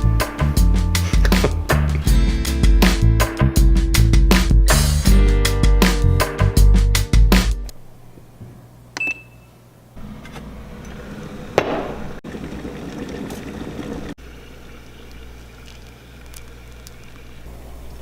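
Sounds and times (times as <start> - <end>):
liquid pouring: 12.2 - 17.5.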